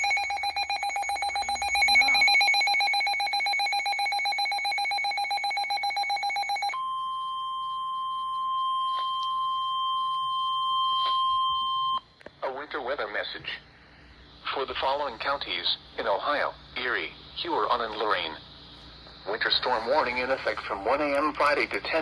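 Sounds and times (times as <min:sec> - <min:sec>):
electronic alarm trilling: 0:00.0 - 0:12.0
long steady high tone: 0:00.0 - 0:12.0.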